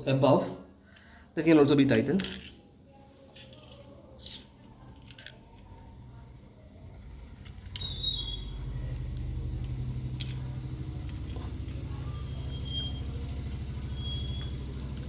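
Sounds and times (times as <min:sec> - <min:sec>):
vehicle engine rumbling: 0:03.4 - 0:15.0.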